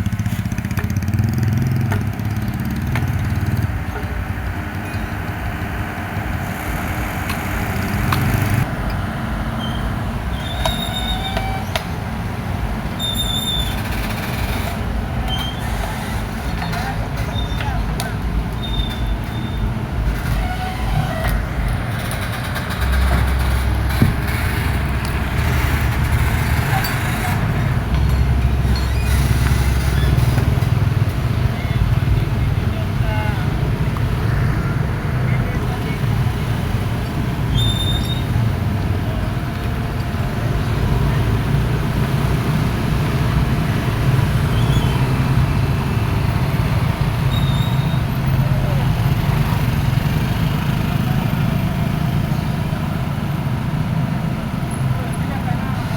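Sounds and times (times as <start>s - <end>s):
diesel engine rumbling: 0.0s - 55.9s
brief high squeaks: 9.6s - 12.0s, 13.0s - 17.8s, 18.6s - 19.6s, 20.2s - 25.0s, 28.1s - 30.8s, 37.5s - 38.4s, 47.2s - 48.2s.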